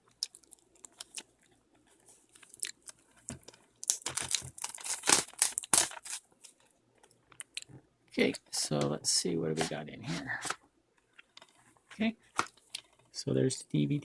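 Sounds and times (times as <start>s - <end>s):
packaging crinkling and tearing: 0.1s - 1.3s, 2.4s - 6.6s.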